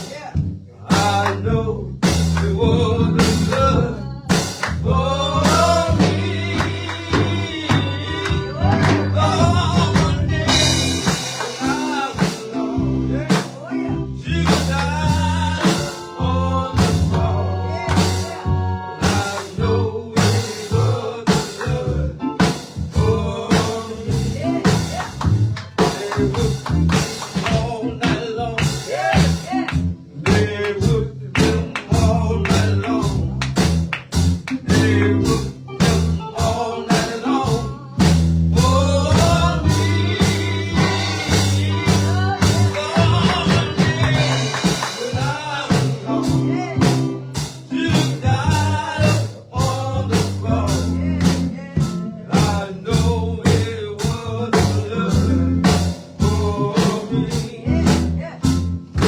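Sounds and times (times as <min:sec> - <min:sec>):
bass: 0:00.0 - 0:59.0
drum kit beat: 0:00.0 - 0:59.0
gospel band playing: 0:00.0 - 0:59.0
voices singing along: 0:00.0 - 0:59.0.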